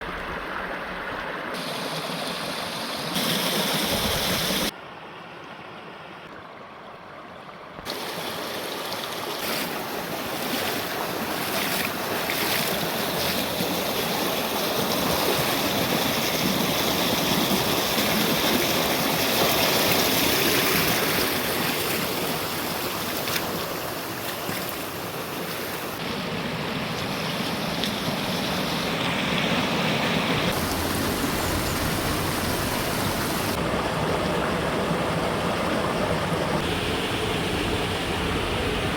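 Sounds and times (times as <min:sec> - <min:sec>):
waterfall rushing: 0:01.6 - 0:04.7, 0:24.9 - 0:38.9.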